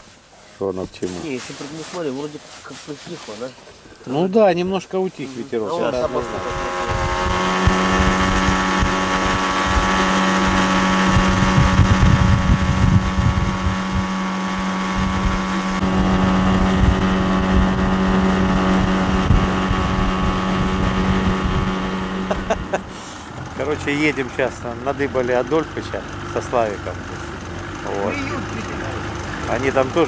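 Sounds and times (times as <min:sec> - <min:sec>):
outboard motor running: 0:05.9 - 0:30.0
wind buffeting microphone: 0:06.1 - 0:22.8.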